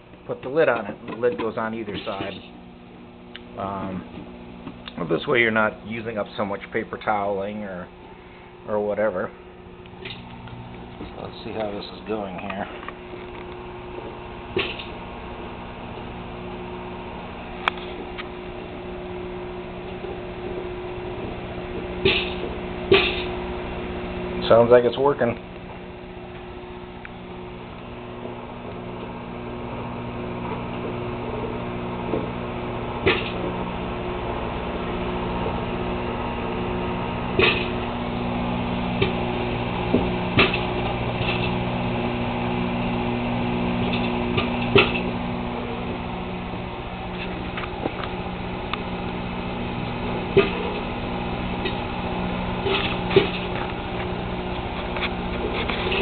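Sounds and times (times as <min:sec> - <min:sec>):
microwave oven humming: 0:00.0 - 0:56.0
popcorn kernels popping: 0:22.0 - 0:23.3, 0:37.3 - 0:37.9.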